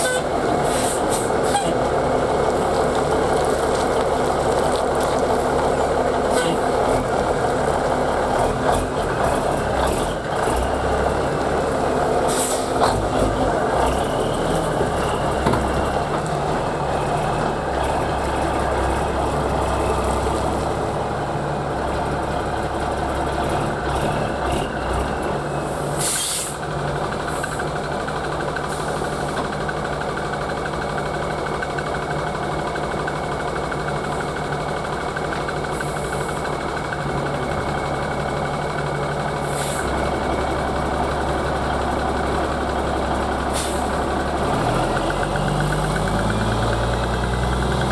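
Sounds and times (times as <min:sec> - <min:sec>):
air brake release hiss: 0:00.0 - 0:01.7, 0:12.3 - 0:12.8, 0:25.7 - 0:26.7, 0:39.4 - 0:39.9, 0:43.5 - 0:44.1
diesel truck engine running: 0:00.0 - 0:47.9.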